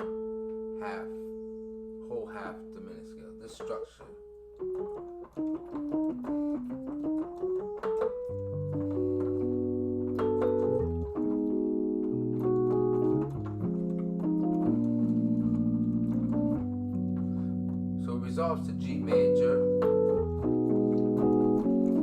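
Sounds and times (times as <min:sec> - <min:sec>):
keyboard sustained chords: 0:00.0 - 0:22.0
keyboard scale run: 0:04.6 - 0:22.0.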